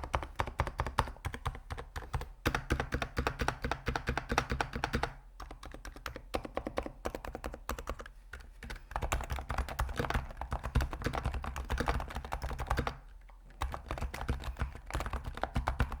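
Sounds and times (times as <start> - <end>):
fast typing on a keyboard: 0.0 - 16.0.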